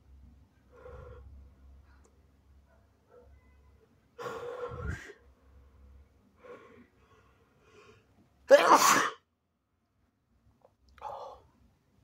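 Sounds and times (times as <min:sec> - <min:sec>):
person gasping breath: 0:04.2 - 0:05.2
person sneezing: 0:08.5 - 0:09.2.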